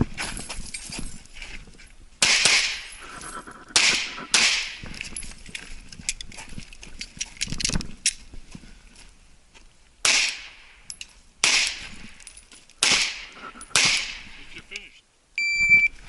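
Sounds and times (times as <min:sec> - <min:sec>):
handgun shots: 0:03.8 - 0:04.8, 0:10.0 - 0:10.5, 0:11.4 - 0:11.8, 0:12.8 - 0:14.2.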